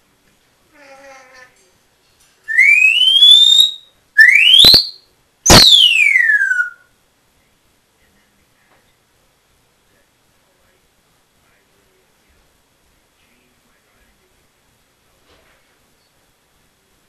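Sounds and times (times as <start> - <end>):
parrot whistling: 2.5 - 6.9
faint mutter: 7.3 - 17.0.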